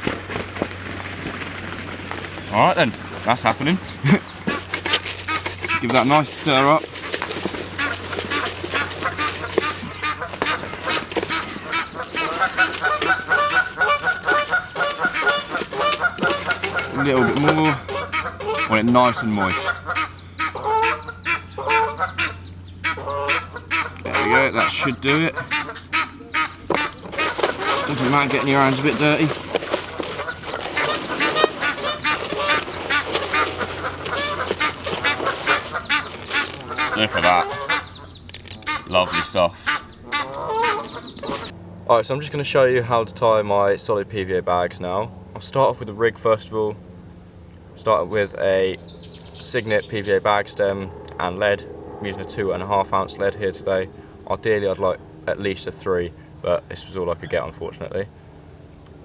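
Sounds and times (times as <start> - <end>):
geese honking: 0.5 - 41.6.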